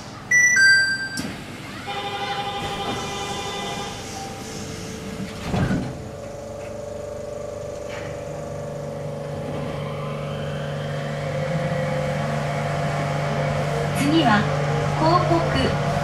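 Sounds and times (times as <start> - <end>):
train door chime: 0.3 - 1.4
sliding doors shutting: 1.1 - 7.1, 7.7 - 8.4, 9.1 - 12.7
deeper hum: 5.4 - 16.0
electric hum: 5.8 - 16.0.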